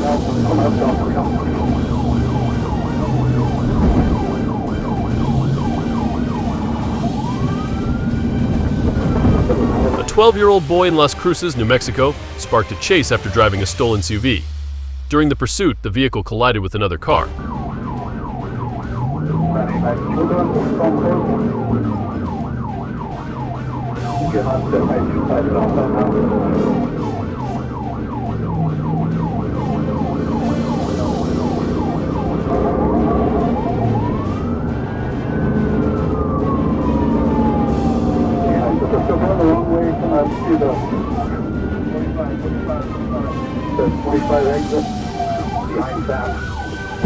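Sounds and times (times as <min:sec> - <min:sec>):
police siren: 0:00.0 - 0:14.5, 0:16.8 - 0:47.0
vehicle engine and road noise: 0:00.0 - 0:47.0.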